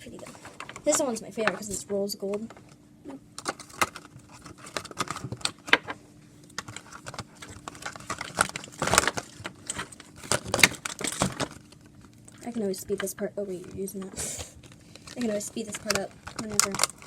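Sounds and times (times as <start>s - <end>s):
crinkling: 0.1s - 17.0s
plastic containers clicking and rattling: 3.4s - 11.7s, 15.0s - 17.0s.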